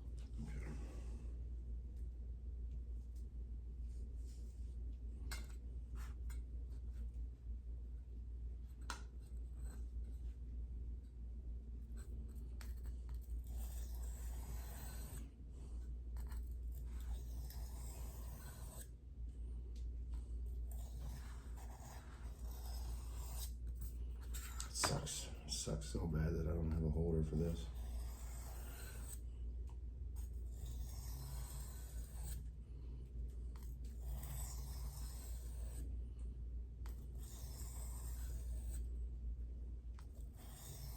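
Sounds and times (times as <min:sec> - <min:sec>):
steady low hum: 0:00.0 - 0:40.9
knife scraping on sharpening stone: 0:17.0 - 0:18.8, 0:27.7 - 0:29.2.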